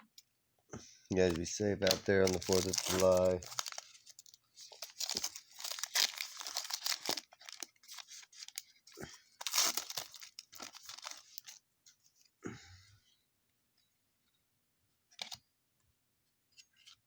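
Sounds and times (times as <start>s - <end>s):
cards rustling: 1.1s - 8.8s, 9.4s - 11.6s
wrapper tearing and crinkling: 1.8s - 8.7s, 9.4s - 11.6s.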